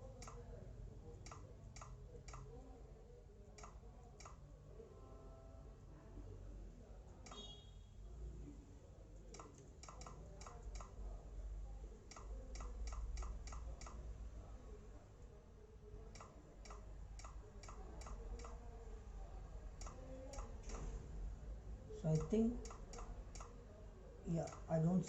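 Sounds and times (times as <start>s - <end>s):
low steady hum: 0.0s - 25.0s
laptop keys clicking: 12.1s - 14.0s.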